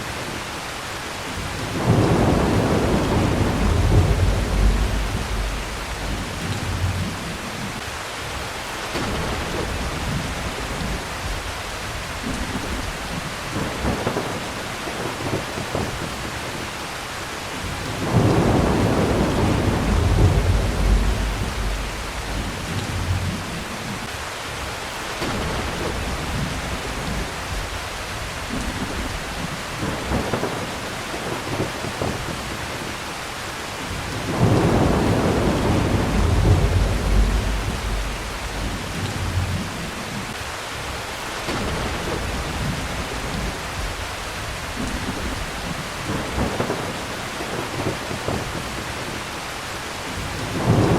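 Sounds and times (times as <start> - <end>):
heavy rain falling: 0.0 - 50.9
rolling thunder: 1.3 - 7.8, 8.9 - 16.6, 17.6 - 24.1, 25.2 - 32.9, 33.9 - 40.4, 41.5 - 49.2, 50.1 - 50.9.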